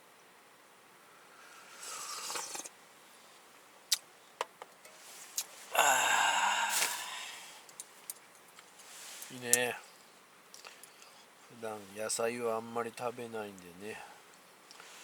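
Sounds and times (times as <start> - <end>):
loud slurp: 1.7 - 2.7
soft rustle: 4.8 - 5.8, 6.6 - 12.5.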